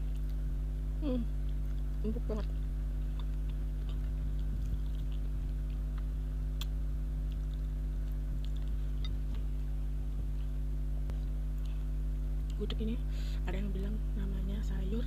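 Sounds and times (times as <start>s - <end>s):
close-up chewing: 0.0s - 0.6s, 1.3s - 12.6s
low electrical hum: 0.0s - 15.0s.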